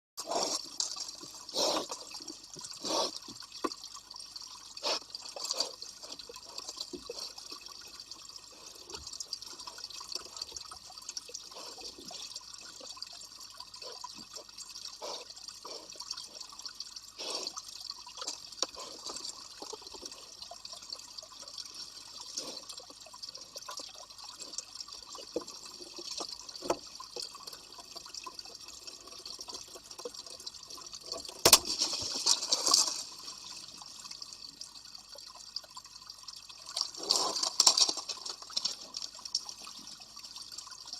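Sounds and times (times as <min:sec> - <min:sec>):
boar chewing coconut: 0:36.7 - 0:39.6.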